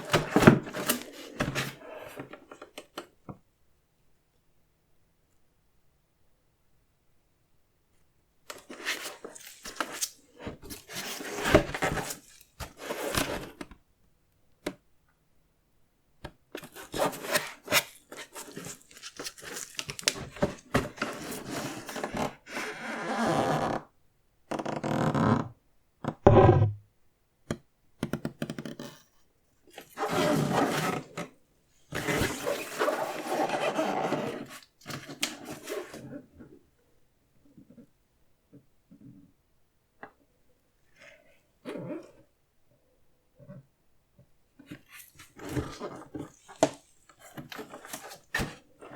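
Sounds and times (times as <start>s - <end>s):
box and paper rustling: 8.6s - 13.6s, 16.6s - 22.1s, 32.0s - 35.9s.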